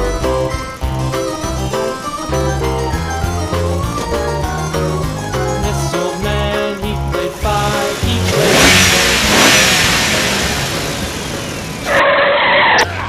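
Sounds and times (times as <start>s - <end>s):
children's music: 0.0s - 10.3s
vehicle engine revving: 0.1s - 13.0s
horn-like burst: 7.6s - 12.2s.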